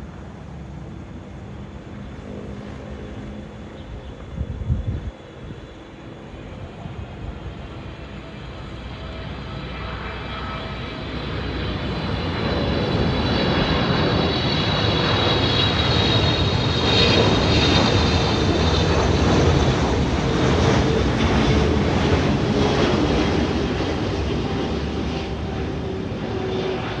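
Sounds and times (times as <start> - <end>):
jet aircraft landing approach: 0.0 - 27.0
high fan whine: 3.1 - 9.5.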